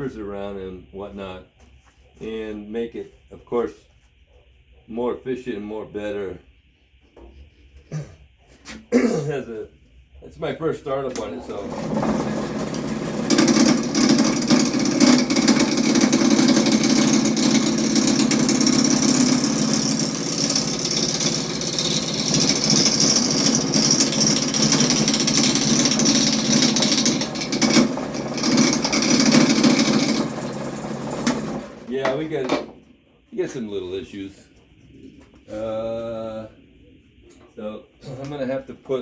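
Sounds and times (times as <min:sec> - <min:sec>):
lathe running with rapid rattle: 0:11.1 - 0:32.7.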